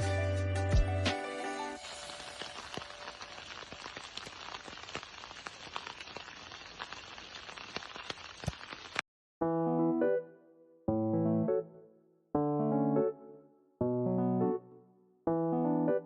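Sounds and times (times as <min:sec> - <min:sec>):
background music: 0:00.0 - 0:03.2, 0:09.4 - 0:16.0
cooking sizzling hiss: 0:01.6 - 0:09.0
crackles and pops: 0:01.8 - 0:09.0.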